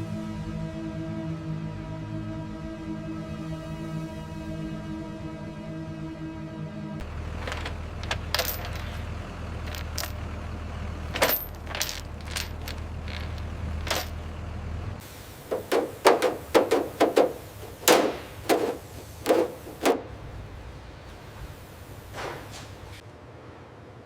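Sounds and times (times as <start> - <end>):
metallic clinks and knocks: 7.0 - 10.3, 11.0 - 14.3, 15.4 - 20.2.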